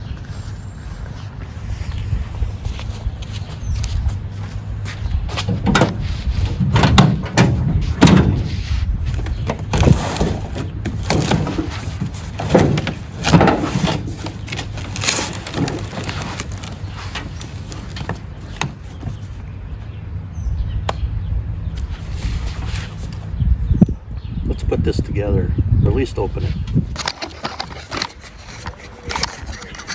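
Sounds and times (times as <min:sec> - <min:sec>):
steady low rumble: 0:00.0 - 0:27.0
scraping: 0:00.3 - 0:20.0, 0:21.8 - 0:23.3, 0:26.5 - 0:29.9
knocks and thumps: 0:05.3 - 0:08.5, 0:09.2 - 0:17.3.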